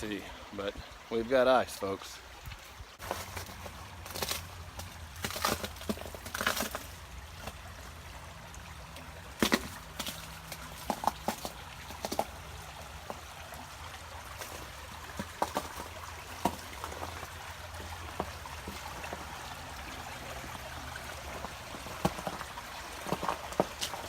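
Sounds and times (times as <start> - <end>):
creek water trickling: 0.0 - 24.0
footsteps on trail: 3.0 - 7.6, 9.4 - 12.4, 14.3 - 19.3.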